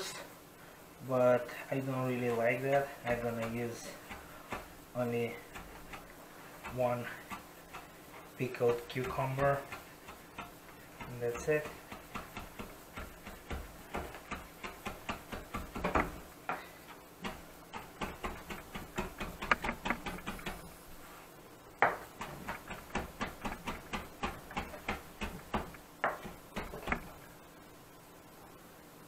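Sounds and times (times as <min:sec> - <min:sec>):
knife chopping on cutting board: 0:03.1 - 0:07.9, 0:08.5 - 0:16.2.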